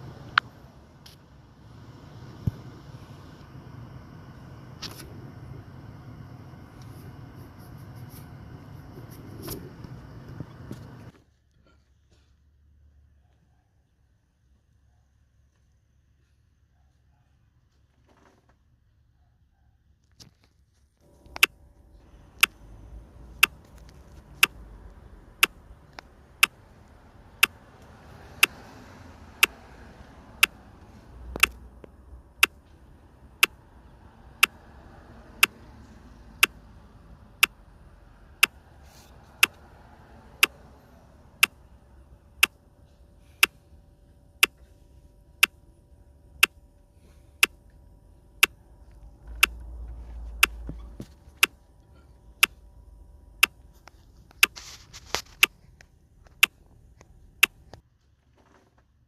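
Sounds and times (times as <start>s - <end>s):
faint steady hum: 0.0s - 17.2s, 21.0s - 57.8s
sharp ticks: 31.3s - 32.6s, 35.4s - 35.6s.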